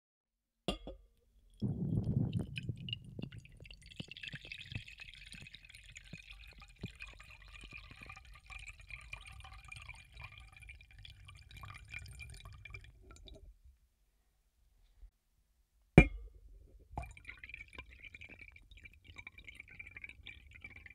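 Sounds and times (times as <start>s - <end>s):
air bubbling underwater: 1.6s - 8.3s.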